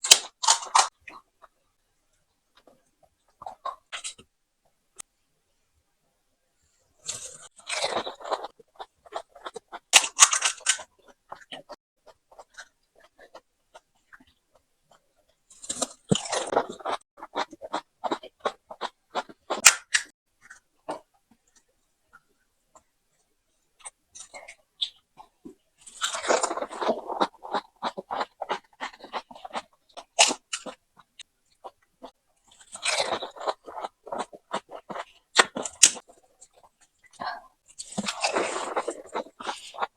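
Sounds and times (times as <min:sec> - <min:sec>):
wet chewing: 0:07.0 - 0:21.1, 0:25.2 - 0:39.9
crisp shell crunching: 0:25.8 - 0:29.6, 0:32.5 - 0:36.6, 0:37.8 - 0:39.9.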